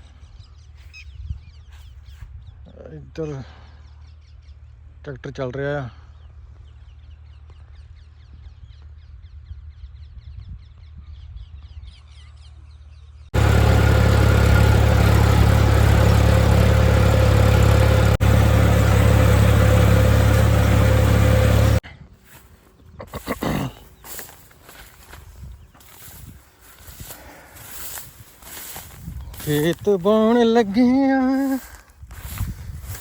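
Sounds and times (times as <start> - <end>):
tractor engine running: 13.4 - 21.8, 24.0 - 30.6, 31.3 - 33.0.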